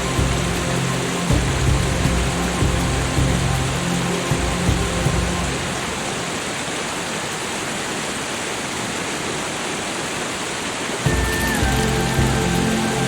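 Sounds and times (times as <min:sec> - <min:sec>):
soft sustained music tones: 0:00.0 - 0:07.2, 0:11.0 - 0:13.0
falling water hiss: 0:00.0 - 0:13.0.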